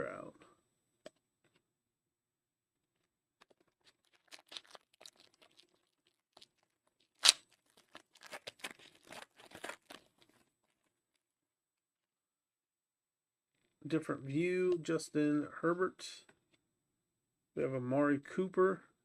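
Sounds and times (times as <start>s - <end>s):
foil wrapper tearing and crinkling: 3.4s - 10.5s
sharp wrapper snap: 4.1s - 5.6s, 7.2s - 10.4s.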